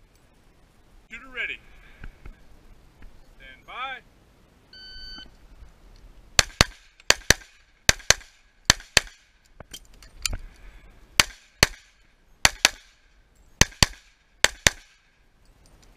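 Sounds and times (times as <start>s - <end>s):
shot timer beep: 4.8s - 5.3s
pistol shots: 6.4s - 9.3s, 11.2s - 13.0s, 13.6s - 15.0s.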